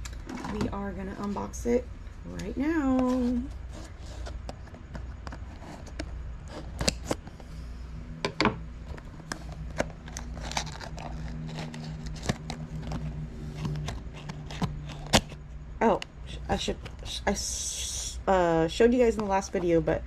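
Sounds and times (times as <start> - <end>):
packaging crinkling and tearing: 9.5 - 15.4.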